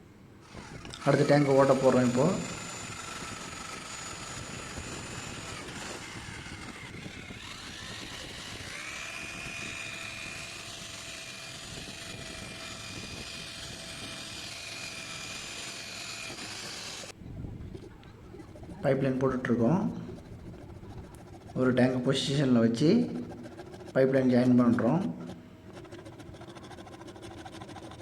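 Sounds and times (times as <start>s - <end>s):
electric drill whining: 0.4s - 17.2s.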